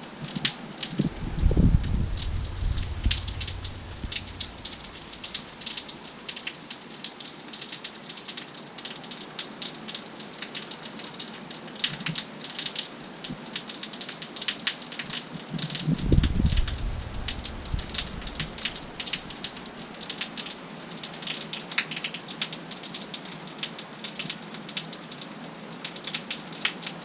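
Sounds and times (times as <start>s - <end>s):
rain falling: 0.0s - 27.0s
wind gust on microphone: 0.9s - 5.5s, 15.8s - 19.6s.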